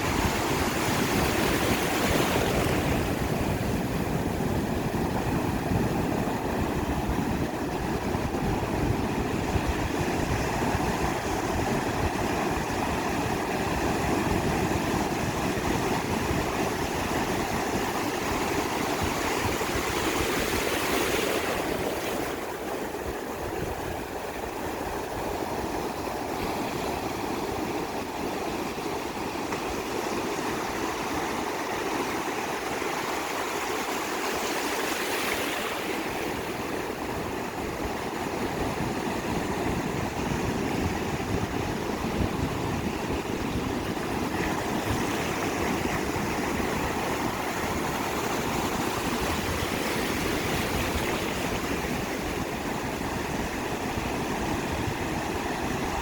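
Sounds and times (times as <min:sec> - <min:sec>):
ocean surf breaking: 0:00.0 - 0:23.3.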